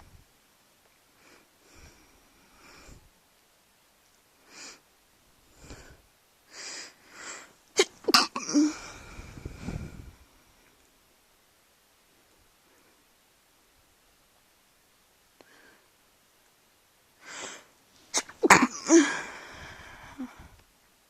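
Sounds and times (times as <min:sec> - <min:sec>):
soft short breaths: 0:01.1 - 0:03.1, 0:04.4 - 0:08.0, 0:08.7 - 0:10.8, 0:17.2 - 0:20.6
person sneezing loudly: 0:07.8 - 0:09.0, 0:18.1 - 0:19.5.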